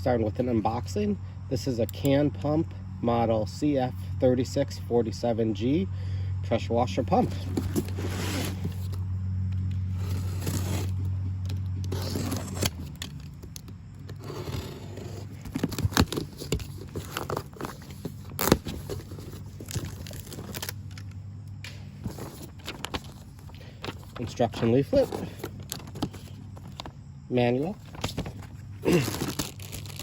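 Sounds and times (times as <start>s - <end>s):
steady low hum: 0.0s - 30.0s
cardboard box being opened: 7.2s - 9.0s, 9.9s - 11.1s, 11.9s - 20.8s, 22.0s - 26.9s, 27.7s - 30.0s
packing crinkling and tearing: 7.2s - 9.0s, 9.9s - 21.2s, 22.0s - 26.9s, 27.8s - 30.0s.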